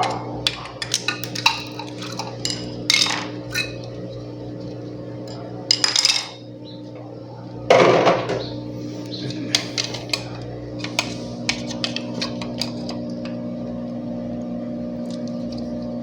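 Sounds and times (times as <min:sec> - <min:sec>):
steady low hum: 0:00.0 - 0:16.0
parts and tools clattering: 0:00.4 - 0:03.9, 0:05.7 - 0:06.4, 0:09.2 - 0:13.0.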